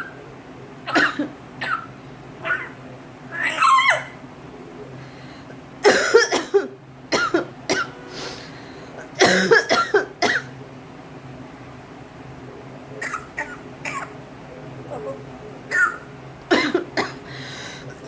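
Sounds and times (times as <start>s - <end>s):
person coughing: 0.9s - 1.9s, 5.8s - 8.0s, 9.0s - 10.5s, 15.7s - 17.3s
pet imitating coughs: 0.9s - 2.8s, 5.8s - 8.0s, 9.0s - 10.6s, 13.0s - 14.2s, 15.7s - 17.3s.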